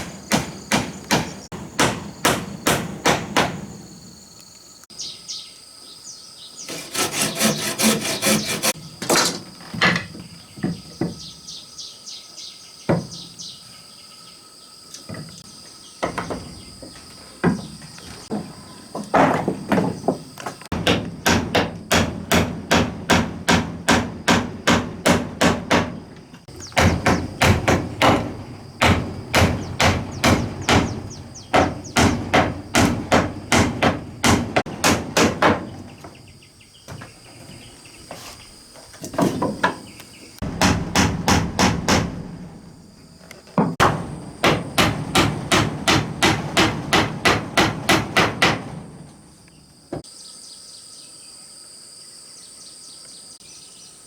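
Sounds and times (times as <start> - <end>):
high insect trill: 0.0 - 34.6.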